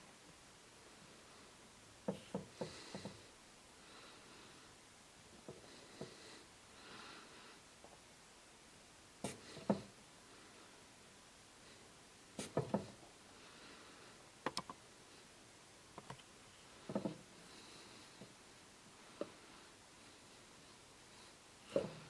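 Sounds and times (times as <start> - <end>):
bottle and packaging taps and clicks: 14.4 - 14.8.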